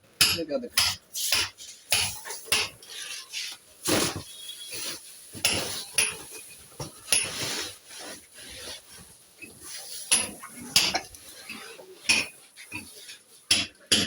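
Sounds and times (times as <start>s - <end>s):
straw and cardboard rustling: 1.6s - 13.5s.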